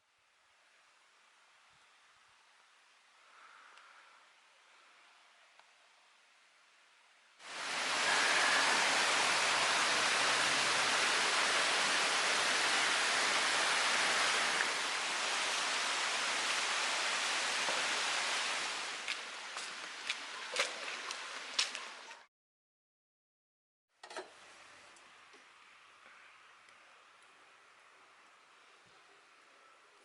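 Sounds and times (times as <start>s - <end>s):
rushing water: 7.4s - 22.1s.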